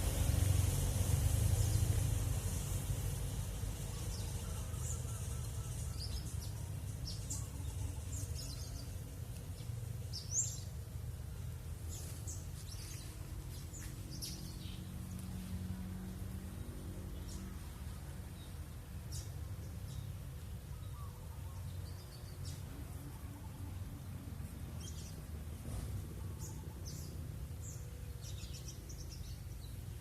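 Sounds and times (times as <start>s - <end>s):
small birds chirping: 0.0s - 16.2s, 16.9s - 30.0s
steady low rumble: 0.0s - 30.0s.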